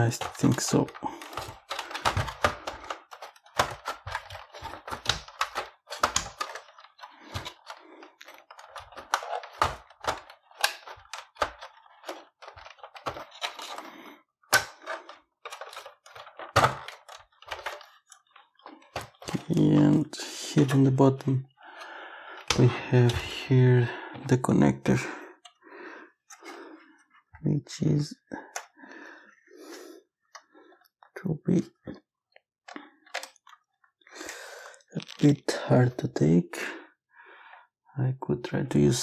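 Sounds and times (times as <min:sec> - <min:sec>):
plastic and metal parts clicking: 0:00.0 - 0:24.3, 0:28.4 - 0:28.8, 0:32.3 - 0:35.6.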